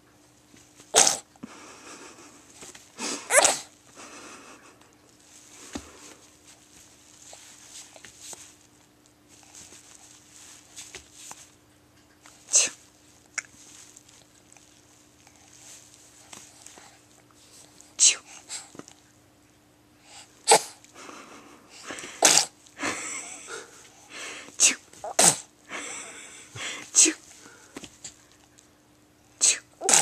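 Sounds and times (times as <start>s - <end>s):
baby sneezing: 0.9s - 1.3s, 3.1s - 3.7s, 12.5s - 12.8s, 20.5s - 20.8s, 22.2s - 22.6s, 24.6s - 25.5s, 29.4s - 30.0s
baby breathing softly: 14.6s - 18.9s, 20.0s - 22.2s.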